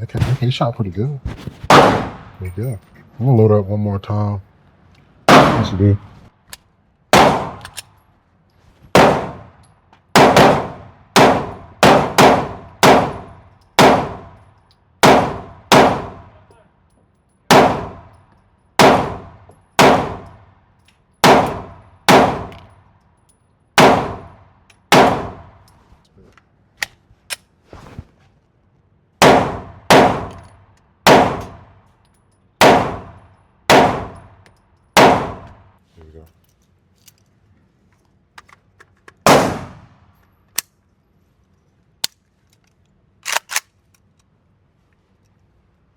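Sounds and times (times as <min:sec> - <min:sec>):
gunshots with ringing echo: 0:01.7 - 0:02.6, 0:05.3 - 0:06.0, 0:07.1 - 0:07.8, 0:08.9 - 0:14.4, 0:15.0 - 0:16.4, 0:17.5 - 0:18.2, 0:18.8 - 0:20.4, 0:21.2 - 0:22.7, 0:23.8 - 0:25.6, 0:29.2 - 0:31.8, 0:32.6 - 0:34.4, 0:35.0 - 0:35.7, 0:39.2 - 0:40.0.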